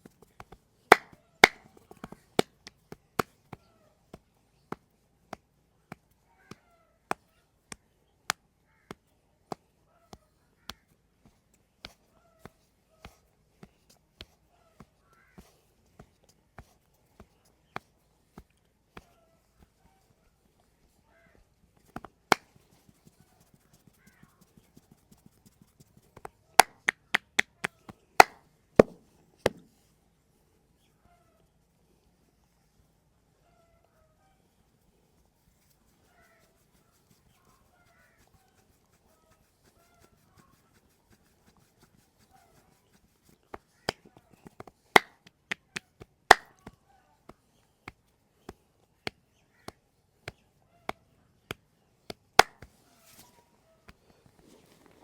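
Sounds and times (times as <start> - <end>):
massage smacks and cracks: 0.4 - 9.6, 21.8 - 23.2, 26.2 - 27.6, 28.2 - 29.7, 43.5 - 46.8, 49.0 - 53.2
hand slaps on body: 0.4 - 15.5, 17.8 - 19.8, 21.8 - 23.9, 26.2 - 29.7, 43.5 - 53.3.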